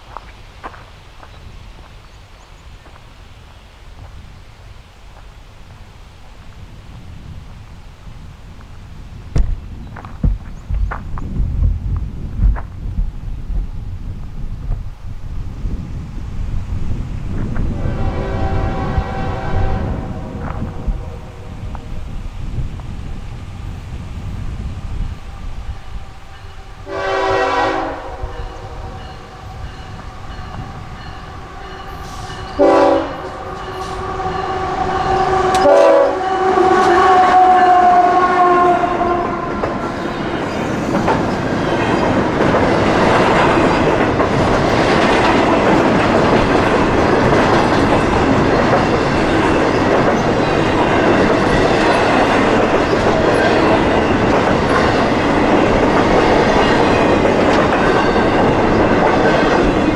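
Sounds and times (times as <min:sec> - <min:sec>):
train cars rolling past: 0:00.0 - 0:59.9
locomotive horn blasts: 0:17.7 - 0:21.4, 0:25.9 - 0:40.3.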